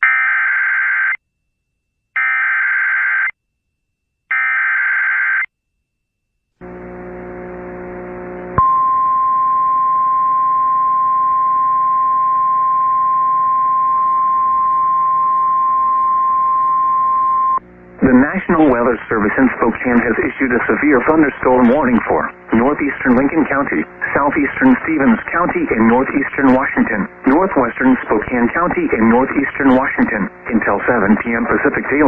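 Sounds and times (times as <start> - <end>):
hiss and hum: 6.6 - 32.0
steady attention tone: 6.6 - 32.0.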